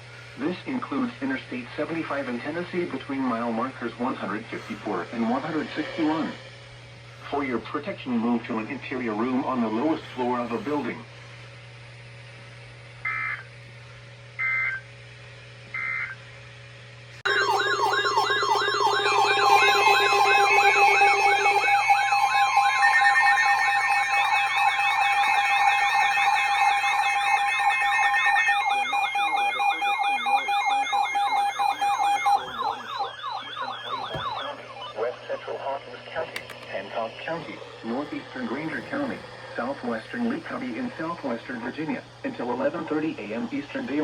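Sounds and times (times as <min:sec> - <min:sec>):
wavering siren-like tone: 0:04.1 - 0:06.5, 0:17.3 - 0:36.5
shrill digital data tones: 0:17.3 - 0:36.2.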